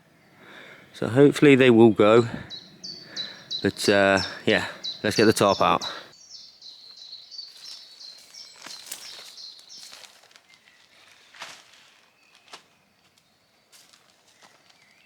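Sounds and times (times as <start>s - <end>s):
rapid high chirping: 2.4s - 6.0s
camping gear rustling and clicking: 7.5s - 15.0s.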